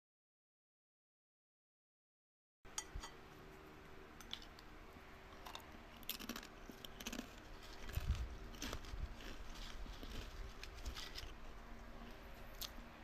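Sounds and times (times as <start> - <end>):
watermelon being chewed: 5.3 - 13.0.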